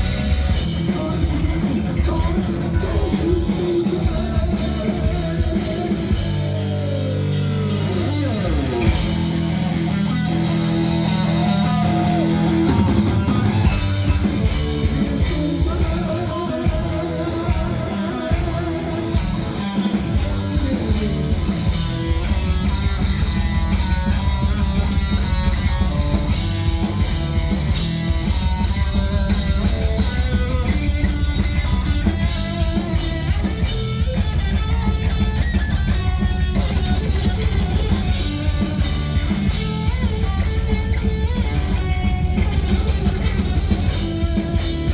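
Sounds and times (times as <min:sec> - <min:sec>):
bass guitar: 0:00.0 - 0:44.9
distorted electric guitars: 0:00.0 - 0:44.9
drum kit: 0:00.0 - 0:44.9.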